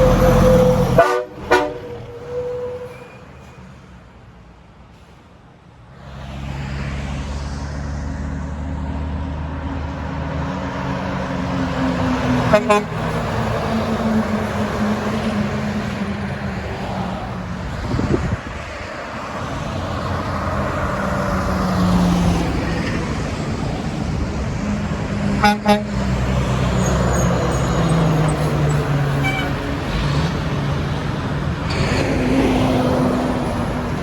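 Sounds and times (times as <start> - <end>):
air horn blast: 0.0 - 3.2, 12.5 - 13.2, 25.4 - 26.2, 29.2 - 29.6
trucks passing on highway: 0.0 - 34.0.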